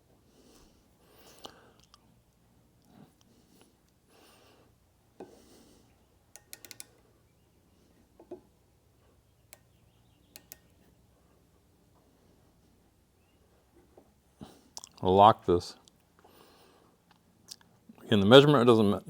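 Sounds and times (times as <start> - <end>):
low room hum: 0.0 - 19.0
micrometer clicks: 6.3 - 7.0, 9.4 - 11.0.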